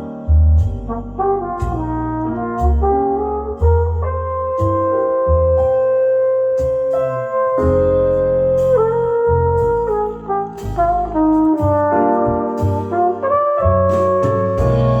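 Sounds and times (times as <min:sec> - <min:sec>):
brass music over loudspeakers: 0:09.6 - 0:15.0.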